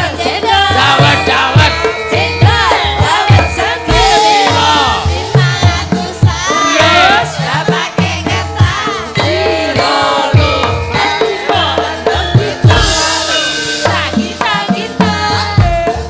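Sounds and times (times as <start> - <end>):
gamelan music: 0.0 - 16.0
woman singing melismatic vocals: 0.0 - 16.0.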